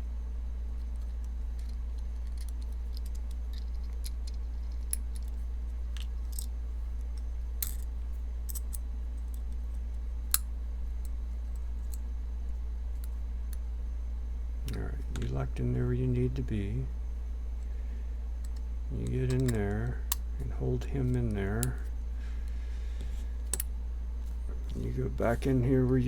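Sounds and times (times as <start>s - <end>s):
steady low hum: 0.0s - 26.0s
small metal parts clicking: 0.8s - 7.9s, 8.5s - 9.5s.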